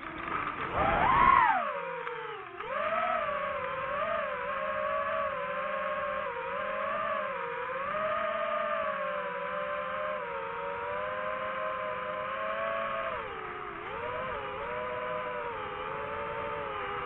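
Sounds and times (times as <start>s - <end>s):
motor whining: 0.0s - 17.0s.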